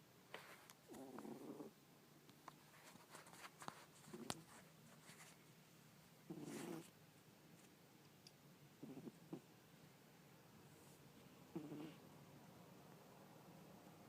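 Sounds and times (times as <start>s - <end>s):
cat snoring faintly: 0.9s - 1.8s, 4.1s - 4.5s, 6.3s - 7.0s, 8.8s - 9.5s, 11.5s - 12.1s.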